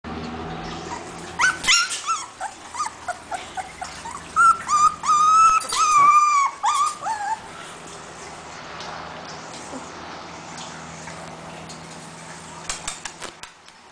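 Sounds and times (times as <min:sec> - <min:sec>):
puppy whining: 0:00.6 - 0:07.8.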